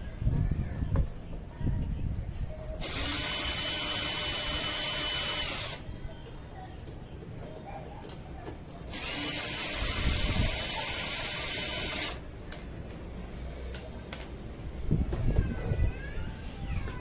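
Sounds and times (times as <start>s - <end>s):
small electric power tool running: 2.8s - 5.8s, 8.9s - 12.2s.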